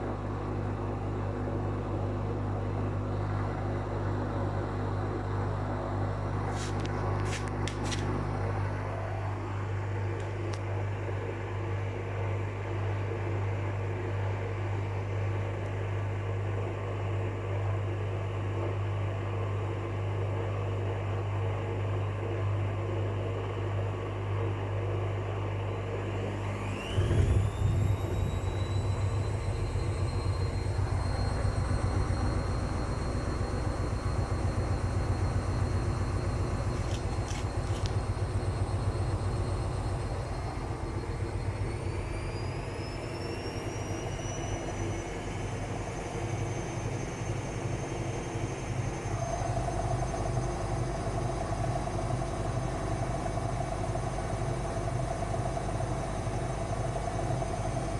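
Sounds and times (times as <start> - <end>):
washing machine humming: 0.0 - 16.9, 23.4 - 57.9
spin motor whine: 26.1 - 57.9
pulsing drum rumble: 27.0 - 57.9.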